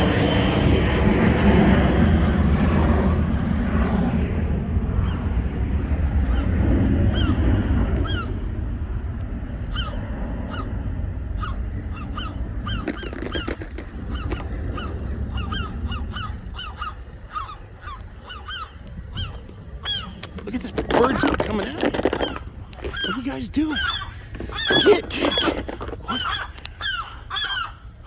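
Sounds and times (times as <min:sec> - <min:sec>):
steady low rumble: 0:00.0 - 0:28.0
seagulls alarm calls: 0:04.9 - 0:05.4, 0:06.1 - 0:28.0.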